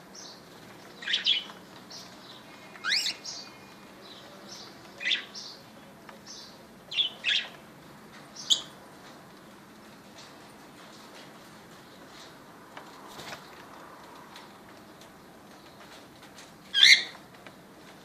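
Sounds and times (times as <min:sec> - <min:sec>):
cockatiels chirping: 0:02.8 - 0:03.6, 0:16.8 - 0:17.2.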